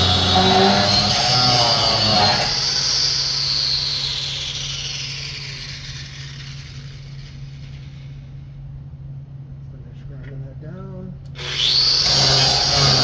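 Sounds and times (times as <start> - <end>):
power tool whining and spinning down: 0.0 - 7.5, 11.4 - 13.0
low electrical hum: 7.7 - 13.0.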